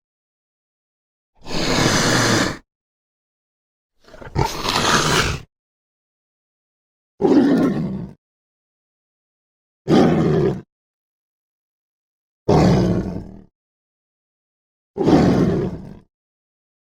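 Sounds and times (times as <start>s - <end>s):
tiger roaring: 1.4s - 2.6s, 4.0s - 5.5s, 9.9s - 10.6s, 12.5s - 13.4s, 15.0s - 16.0s.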